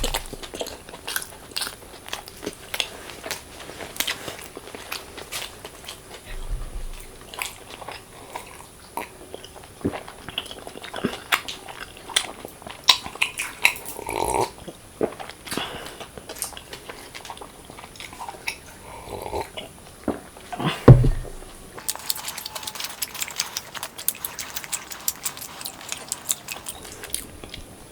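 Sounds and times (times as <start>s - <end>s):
person chewing with mouth clicks: 0.0s - 3.4s, 21.2s - 27.8s
heavy thump: 20.8s - 21.8s.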